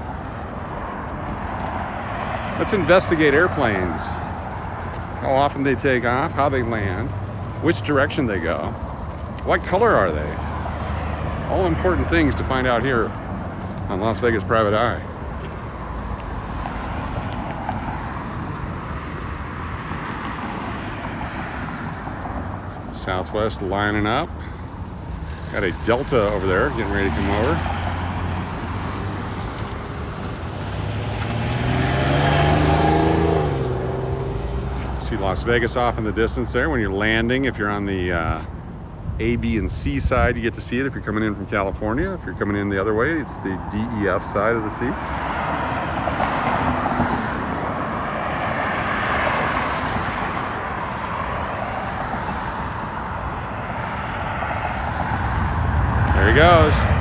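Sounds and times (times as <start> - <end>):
vehicle engine approaching and passing: 0.0 - 38.5, 39.2 - 57.0
low traffic hum: 0.0 - 57.0
jet engines roaring on takeoff: 54.4 - 57.0.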